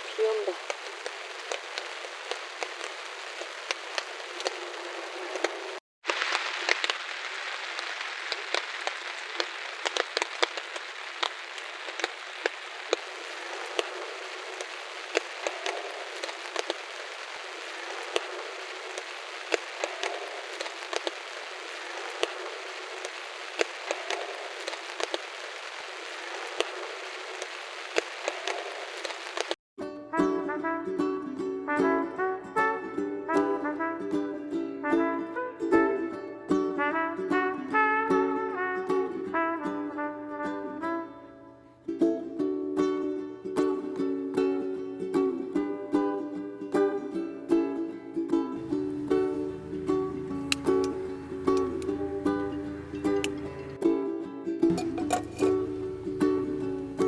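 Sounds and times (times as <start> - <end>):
steady rain falling: 0.0 - 29.6, 48.5 - 53.8, 54.7 - 57.0.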